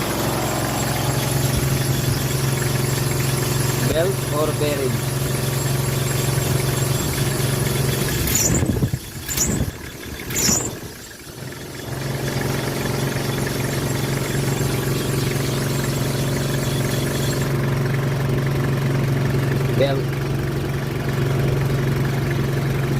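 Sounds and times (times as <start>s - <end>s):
car engine idling: 0.0s - 22.9s
belt squeak: 5.0s - 17.5s.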